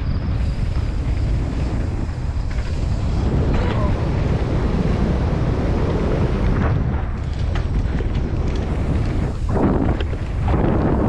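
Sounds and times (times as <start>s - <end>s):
bike clicks and rattles: 0.0s - 11.0s
bike tyres rumbling on dirt: 0.0s - 11.0s
wind buffeting microphone: 0.0s - 11.0s.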